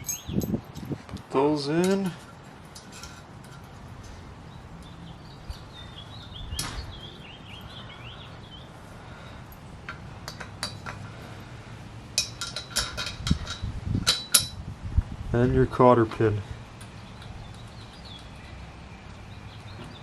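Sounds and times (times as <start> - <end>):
bird chirping: 0.0 - 0.6, 4.1 - 9.4, 16.7 - 20.0
small metal parts clinking: 0.0 - 1.0, 9.4 - 11.1, 12.2 - 14.6
steady low hum: 0.0 - 20.0.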